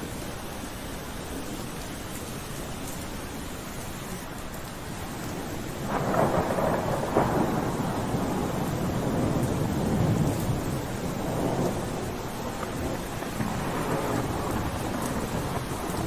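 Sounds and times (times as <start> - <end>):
steady rain: 0.0 - 16.0
thunder rumbling: 4.9 - 16.0.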